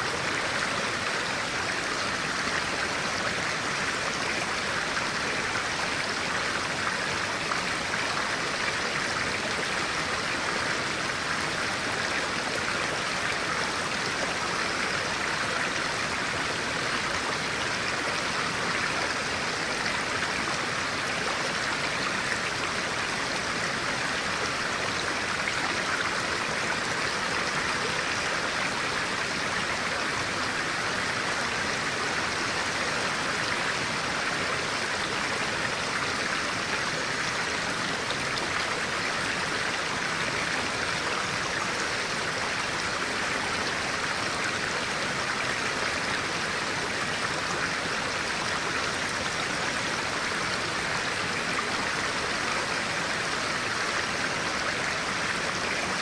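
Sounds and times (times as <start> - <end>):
stream flowing: 0.0 - 56.0.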